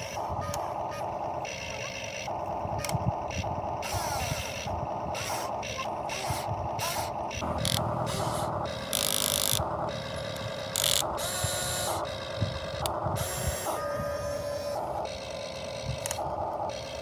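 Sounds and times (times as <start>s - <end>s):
small electric motors whirring: 0.0s - 17.0s.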